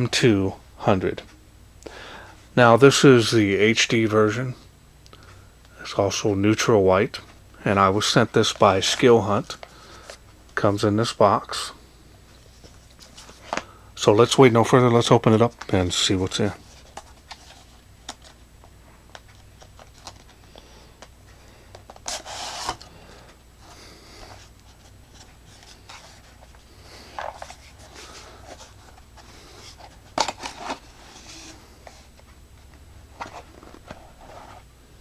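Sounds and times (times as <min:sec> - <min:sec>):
packaging rubbing and scraping: 0:21.9 - 0:22.9, 0:23.6 - 0:32.2, 0:33.2 - 0:34.7.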